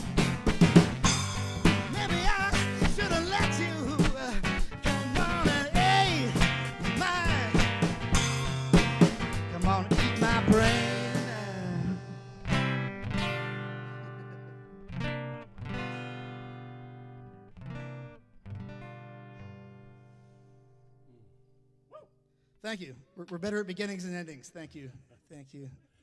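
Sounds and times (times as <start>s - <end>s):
drum strikes: 0.0s - 4.3s, 4.9s - 11.6s
acoustic guitar: 0.0s - 22.5s.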